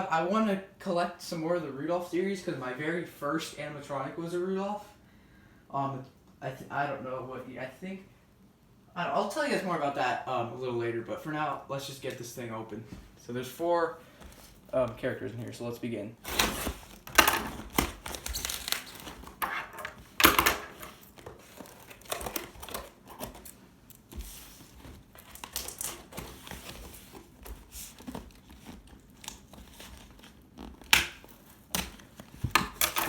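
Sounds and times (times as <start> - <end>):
box tearing rips: 16.2 - 23.6
packing material crinkling: 16.2 - 33.0.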